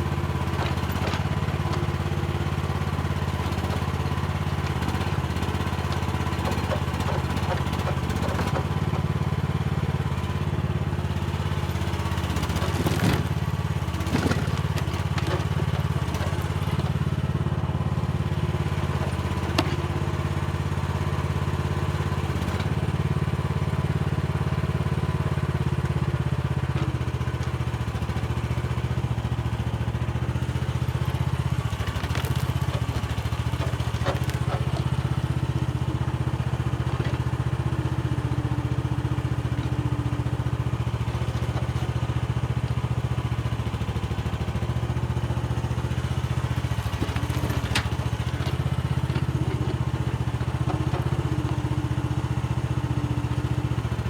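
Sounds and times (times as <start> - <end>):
excavator engine running: 0.0 - 54.0
sharp clicks and knocks from digging: 12.2 - 17.0, 18.8 - 20.0, 30.6 - 35.3, 46.2 - 51.8.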